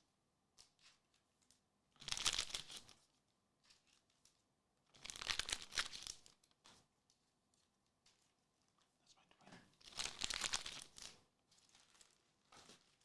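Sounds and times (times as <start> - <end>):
plastic packaging crinkling: 9.9 - 13.0.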